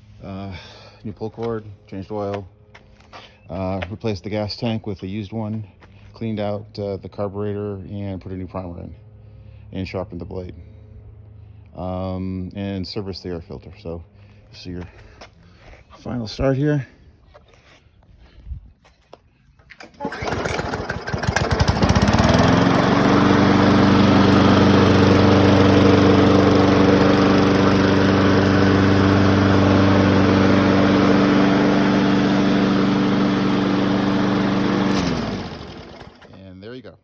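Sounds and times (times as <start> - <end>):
lawn mower engine starting and running: 19.6 - 36.4.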